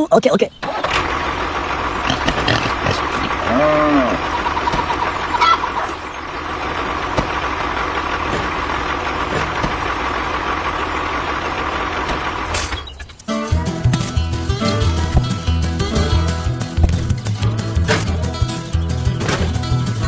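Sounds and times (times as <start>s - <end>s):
music: 13.3s - 20.0s.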